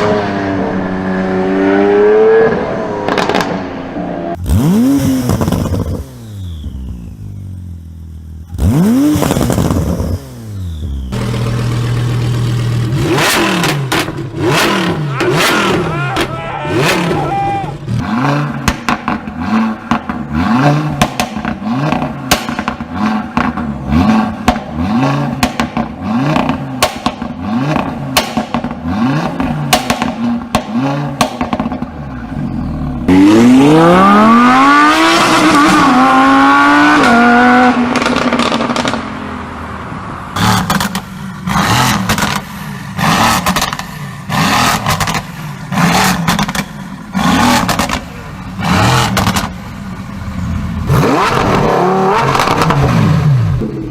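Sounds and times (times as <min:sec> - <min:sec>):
car engine revving: 0:00.0 - 0:53.9
exhaust crackles and pops: 0:03.0 - 0:03.6, 0:18.5 - 0:20.2, 0:37.9 - 0:39.1, 0:40.4 - 0:43.9, 0:47.5 - 0:48.2, 0:49.0 - 0:49.7.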